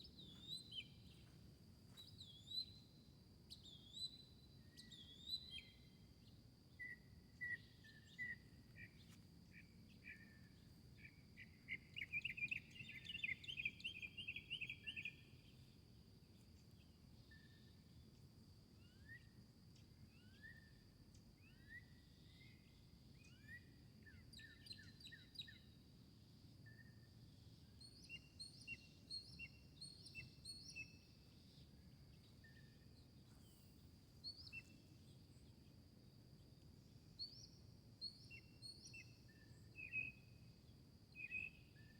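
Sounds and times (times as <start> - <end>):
garden birds chirping: 0.0 - 1.3, 27.9 - 35.8.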